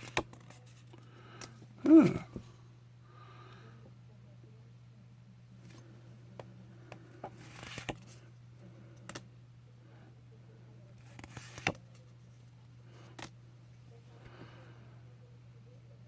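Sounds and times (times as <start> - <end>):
trading cards flipped: 7.2 - 8.2, 11.0 - 11.8.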